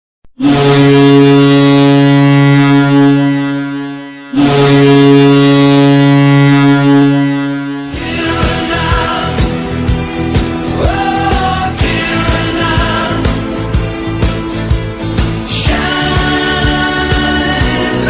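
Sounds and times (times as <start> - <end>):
goal horn blasts: 0.4 - 8.6
goal music: 7.9 - 18.0.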